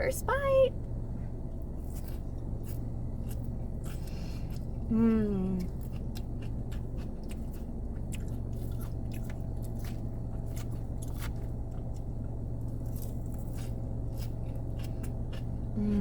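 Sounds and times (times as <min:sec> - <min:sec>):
steady low hum: 0:00.0 - 0:16.0
person chewing salad: 0:01.5 - 0:16.0.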